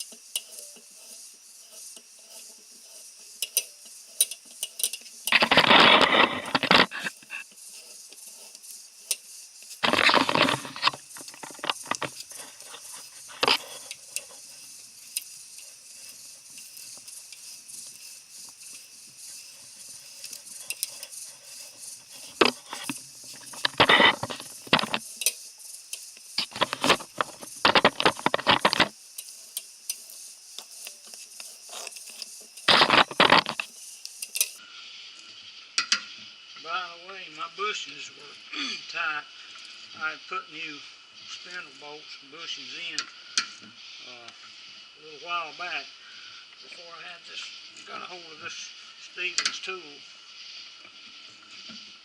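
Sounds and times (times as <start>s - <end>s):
reamer clicking and rattling: 0.0s - 34.6s.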